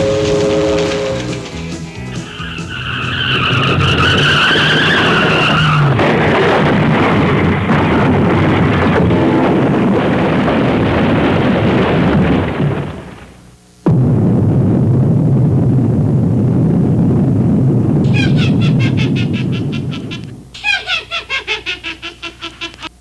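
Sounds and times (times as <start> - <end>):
high wavering squeal: 0.0 - 5.6
train rumbling: 0.0 - 10.5, 18.0 - 22.8.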